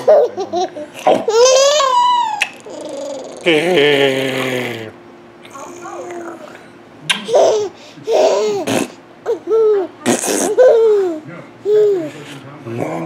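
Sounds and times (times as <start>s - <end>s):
baby laughing: 0.0s - 4.1s, 7.1s - 12.2s.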